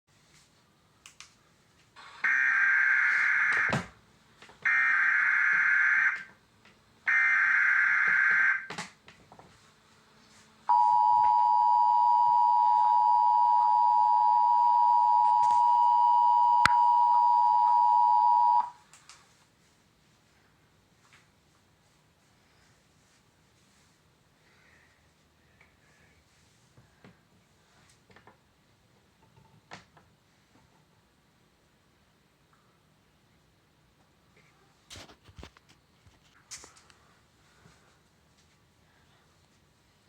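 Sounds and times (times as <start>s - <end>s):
data tone bursts: 10.7s - 18.7s
two-tone attention signal: 10.7s - 18.7s.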